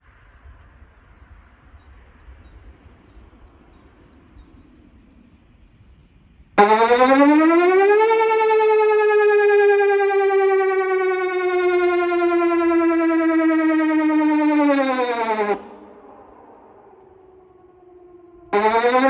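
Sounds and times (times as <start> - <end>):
electronic warning siren: 6.6 - 19.0.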